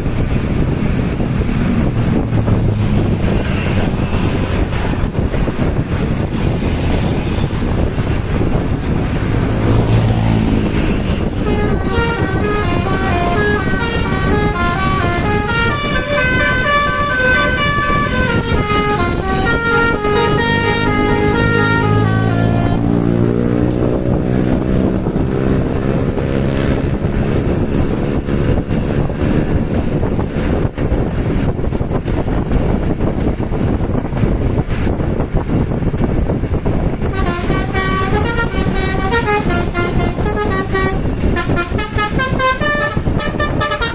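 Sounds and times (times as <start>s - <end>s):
bus engine with loud exhaust: 0.0s - 43.9s
multi-tone musical horn melody: 9.7s - 23.4s, 37.1s - 43.9s.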